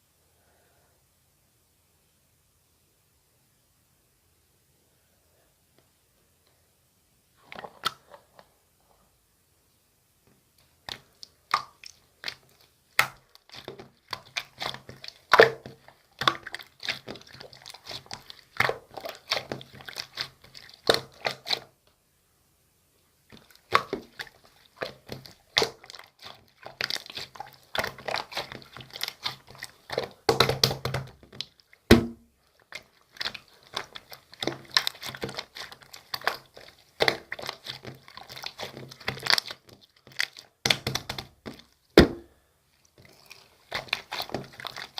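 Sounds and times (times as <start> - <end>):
slime squished by hand: 10.6 - 21.7, 23.3 - 44.9.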